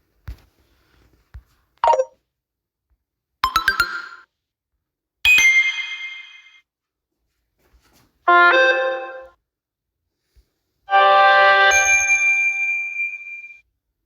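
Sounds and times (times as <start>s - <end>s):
phone ringtone chimes: 11.6s - 13.6s.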